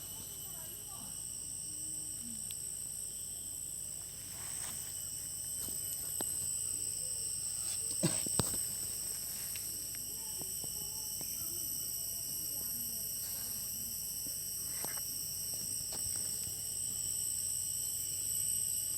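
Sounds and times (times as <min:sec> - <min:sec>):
insects chorus: 0:00.0 - 0:18.9.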